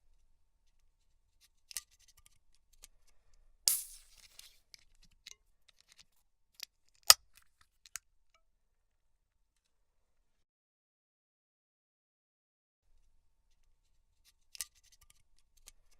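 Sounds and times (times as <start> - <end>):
loud sharp click: 3.7 - 4.2
can popping with hiss: 3.7 - 4.6.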